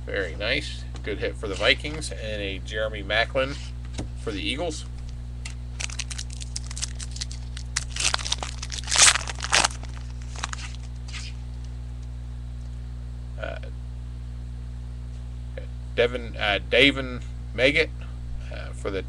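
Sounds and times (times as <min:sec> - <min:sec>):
steady low hum: 0:00.0 - 0:19.0
cards clicking and crinkling: 0:05.8 - 0:11.4.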